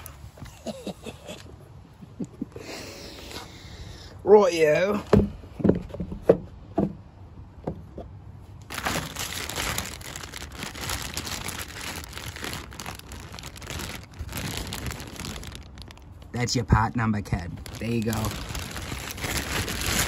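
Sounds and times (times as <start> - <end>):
plastic packaging crinkling: 8.6 - 16.4, 17.4 - 20.0.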